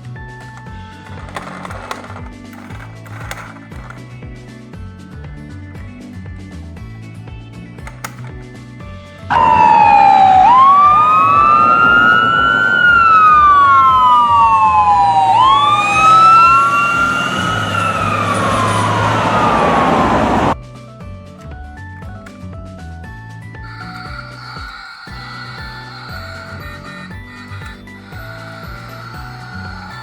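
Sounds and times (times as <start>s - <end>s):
emergency vehicle siren wailing: 9.3s - 20.6s, 23.7s - 30.0s.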